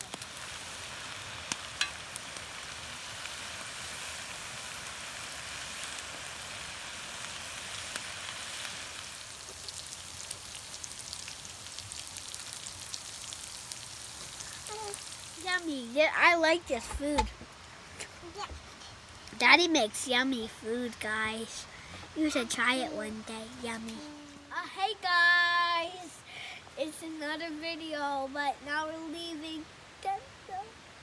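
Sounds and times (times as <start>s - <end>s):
food sizzling in a frying pan: 0.0s - 17.4s.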